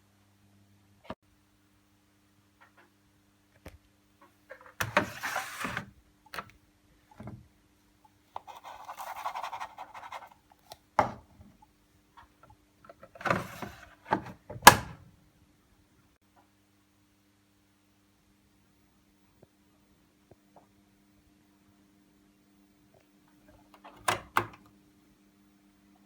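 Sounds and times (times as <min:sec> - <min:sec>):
faint steady hum: 0:00.0 - 0:26.0
sliding scrapes: 0:04.9 - 0:05.9.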